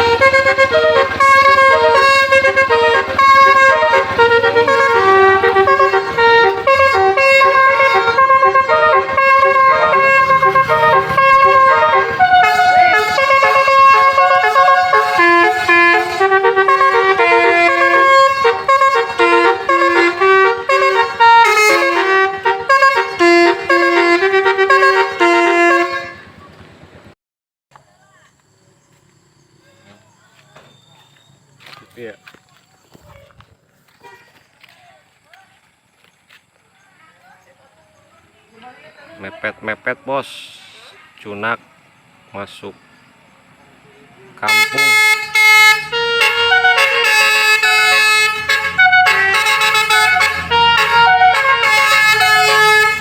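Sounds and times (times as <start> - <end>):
bus horn playing melody: 0.0 - 26.5, 44.4 - 53.0.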